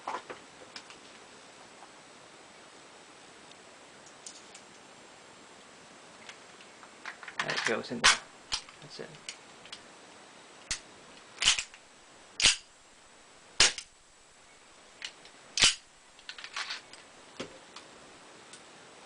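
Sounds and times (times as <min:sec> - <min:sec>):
air pistol shots: 0:11.4 - 0:11.7, 0:12.4 - 0:12.7, 0:13.6 - 0:13.9.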